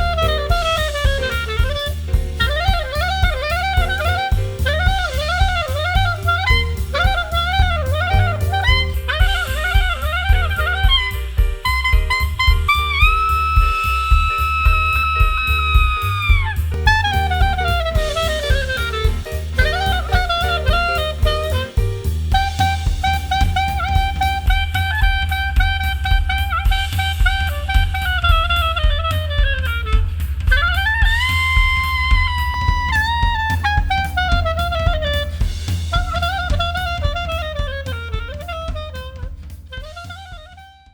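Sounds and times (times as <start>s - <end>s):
instrumental swing jazz: 0.0s - 40.9s.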